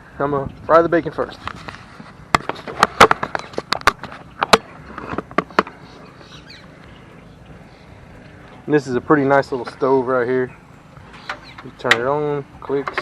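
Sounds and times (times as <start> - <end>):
cooking gear clicks and knocks: 12.7 - 13.0.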